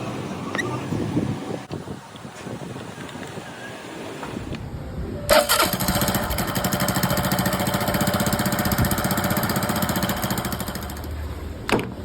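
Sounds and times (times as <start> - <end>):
motorcycle engine running: 5.3 - 11.2.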